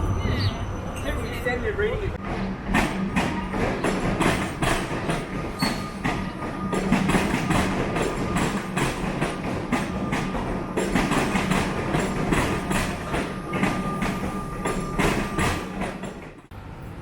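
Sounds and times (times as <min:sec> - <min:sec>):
train rumbling on rails: 0:00.0 - 0:17.0.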